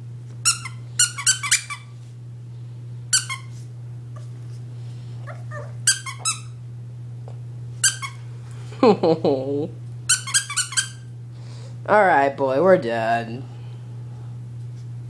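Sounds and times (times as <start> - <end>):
squeaky dog toy squeaking: 0.4 - 1.9, 3.1 - 3.5, 5.6 - 6.6, 7.8 - 8.2, 10.1 - 11.0.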